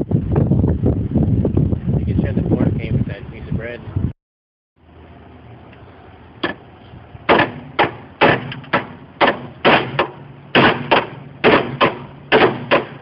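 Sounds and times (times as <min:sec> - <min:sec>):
hammer striking sheet metal: 0:07.3 - 0:13.0.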